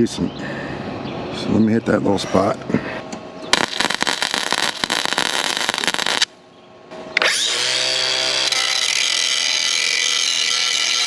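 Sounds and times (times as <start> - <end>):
welding arc crackling: 3.6 - 6.3, 8.4 - 11.0
angle grinder running: 7.3 - 11.0.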